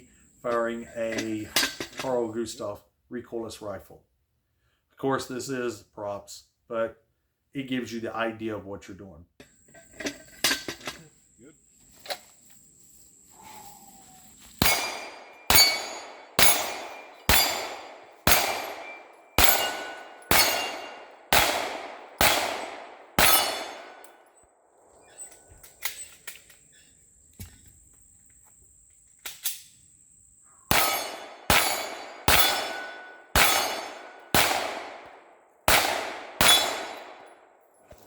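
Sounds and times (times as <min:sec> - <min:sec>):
gunshots ringing on steel: 0:14.6 - 0:24.2, 0:30.7 - 0:37.4.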